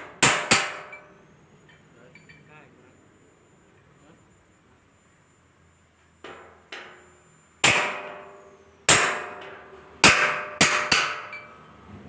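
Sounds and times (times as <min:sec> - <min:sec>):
hammer striking sheet metal: 0:00.0 - 0:01.0, 0:07.6 - 0:11.5.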